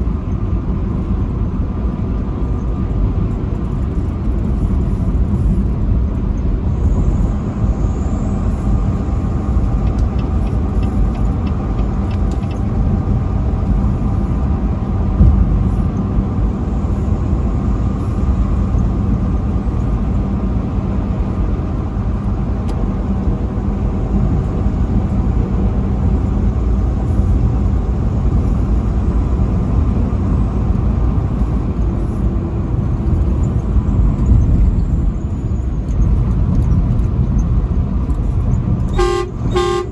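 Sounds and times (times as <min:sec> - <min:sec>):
road rumble: 0:00.0 - 0:39.9
truck engine drone: 0:00.0 - 0:39.9
brief thump: 0:15.2 - 0:15.6.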